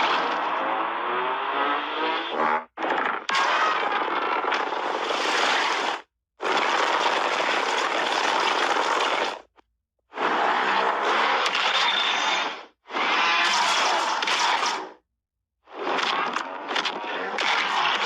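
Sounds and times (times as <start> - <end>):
screeching monster roar: 13.0 - 14.8.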